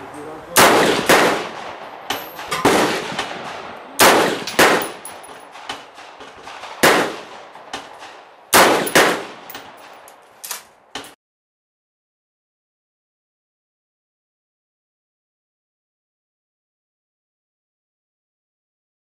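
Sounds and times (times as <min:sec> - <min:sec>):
rifle shots with echo: 0:00.5 - 0:10.1.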